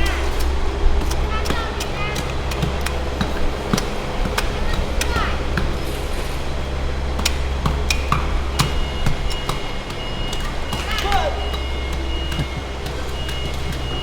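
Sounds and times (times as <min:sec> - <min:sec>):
steady low hum: 0:00.0 - 0:14.0.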